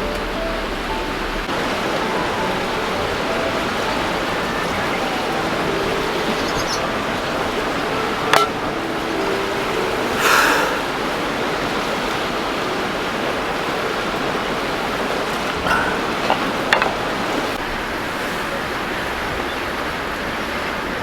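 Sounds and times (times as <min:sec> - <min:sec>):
rushing wind: 0:00.0 - 0:21.0
gust or rustle: 0:17.4 - 0:19.4.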